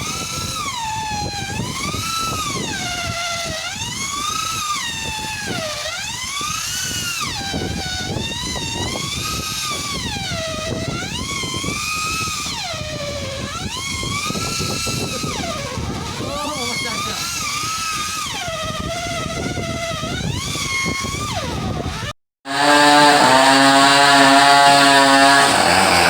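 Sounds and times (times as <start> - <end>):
angle grinder whining: 13.5 - 18.2, 20.8 - 26.0
rough grinding rasp: 22.5 - 26.0.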